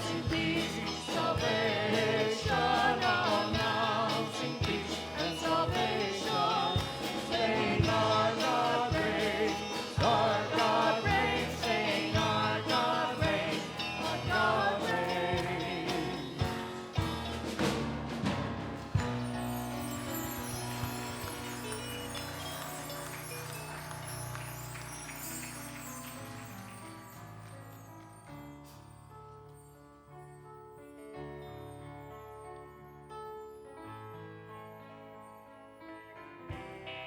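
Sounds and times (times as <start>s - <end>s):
group singing worship music: 0.0s - 17.3s.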